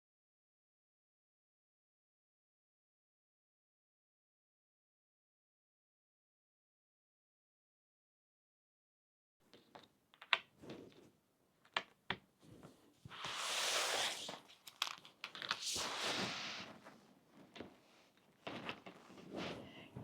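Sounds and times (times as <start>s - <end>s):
puzzle pieces rustling and sliding: 13.1s - 17.0s
puzzle pieces clicking: 14.7s - 15.6s.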